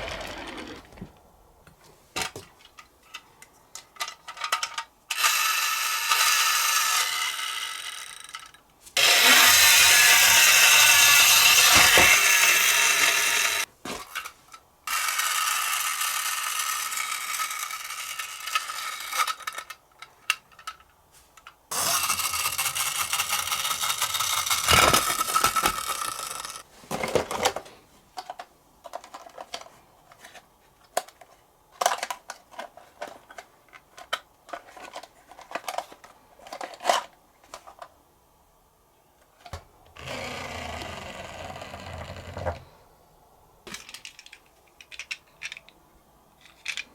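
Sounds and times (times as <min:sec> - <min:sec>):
toy car mechanical whir: 0:00.0 - 0:01.0, 0:05.1 - 0:13.7, 0:14.9 - 0:19.8, 0:21.7 - 0:26.6, 0:40.0 - 0:42.6
toy clicking on track: 0:04.5 - 0:13.7, 0:14.9 - 0:20.8, 0:21.7 - 0:26.6.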